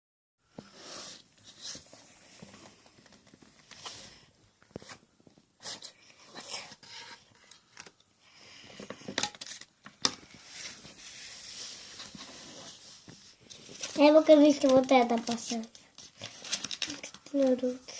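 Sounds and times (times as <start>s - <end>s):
packaging crinkling and tearing: 9.2s - 9.7s, 13.5s - 17.5s.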